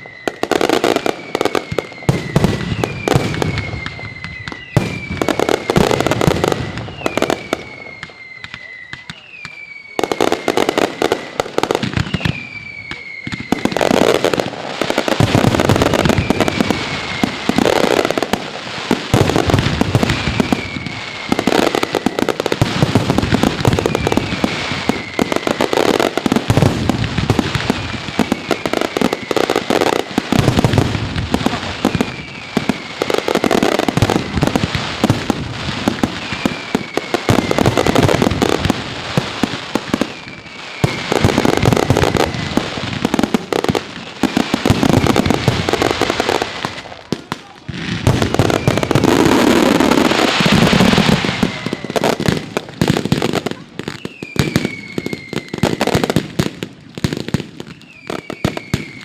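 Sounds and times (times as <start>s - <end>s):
high falling whistle: 0.0s - 14.2s, 23.6s - 26.4s, 54.0s - 56.0s
firecrackers crackling: 0.0s - 59.0s.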